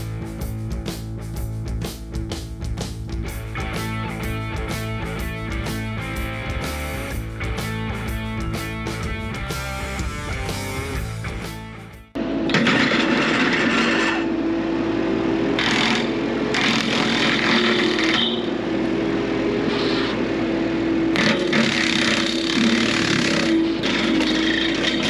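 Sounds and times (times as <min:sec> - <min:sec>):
music: 0:00.0 - 0:12.2.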